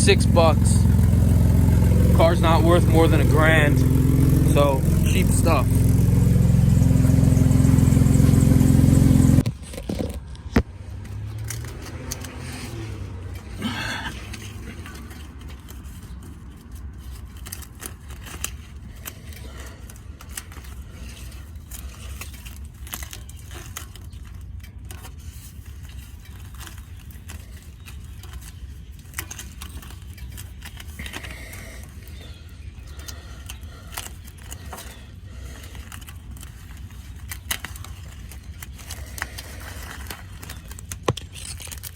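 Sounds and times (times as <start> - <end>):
low steady hum: 0.0 - 11.8
car engine with leaking exhaust: 0.0 - 41.9
small clicks and scrapes: 9.4 - 41.9.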